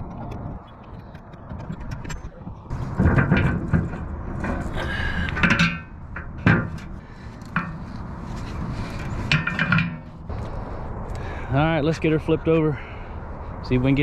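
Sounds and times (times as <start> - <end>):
low rumble: 0.0 - 9.4
steel parts clanking: 1.8 - 10.3.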